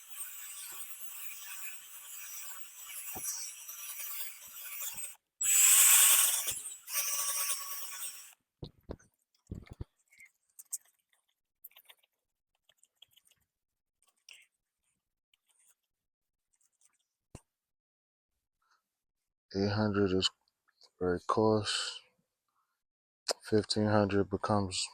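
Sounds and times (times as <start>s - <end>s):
power drill sanding: 0.0s - 8.3s.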